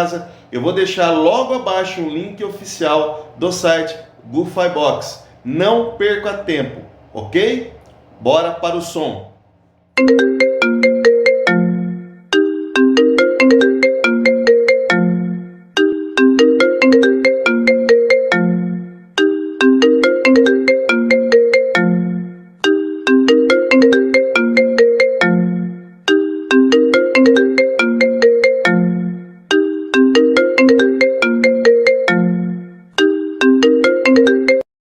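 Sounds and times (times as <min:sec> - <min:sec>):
phone ringtone: 0:10.0 - 0:34.7.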